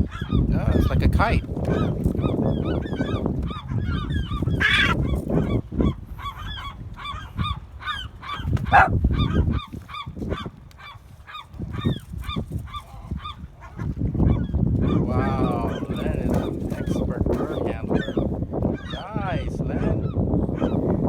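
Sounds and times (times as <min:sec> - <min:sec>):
bird calling: 0:01.7 - 0:13.4.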